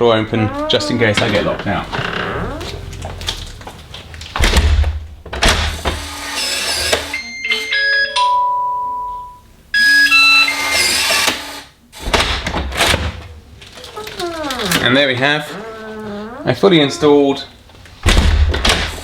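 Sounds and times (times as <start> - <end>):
door and lock thuds: 0.3 - 6.1, 18.0 - 19.0.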